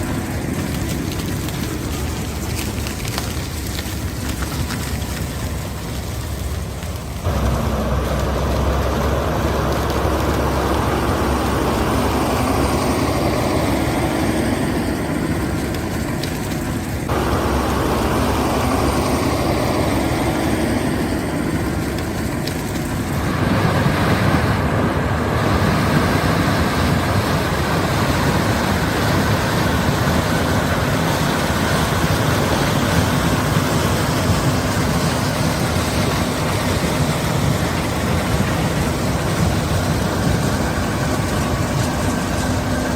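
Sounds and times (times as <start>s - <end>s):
combine harvester droning: 0.0s - 42.9s.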